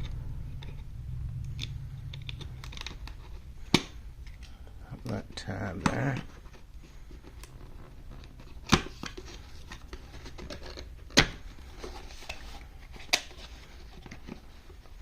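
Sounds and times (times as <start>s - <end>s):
box rustling and tapping: 5.2s - 15.0s.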